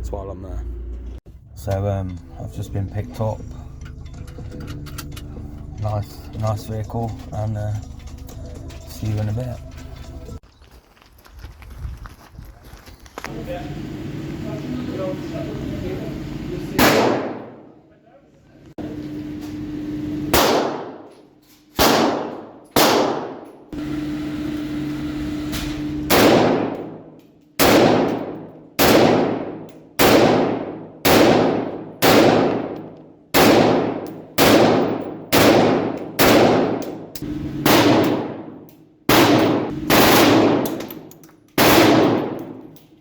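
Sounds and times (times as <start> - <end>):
gunshots with ringing tail: 16.7 - 17.8, 20.3 - 21.1, 21.8 - 24.5, 26.0 - 42.8.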